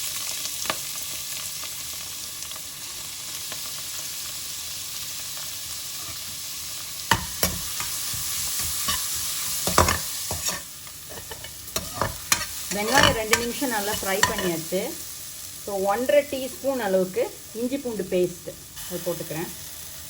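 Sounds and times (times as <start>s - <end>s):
onions sizzling in hot oil: 0.0s - 20.0s.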